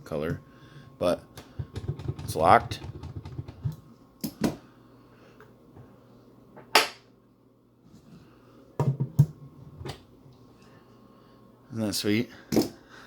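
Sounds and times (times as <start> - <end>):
cabinet door knocking and rattling: 1.6 - 3.6.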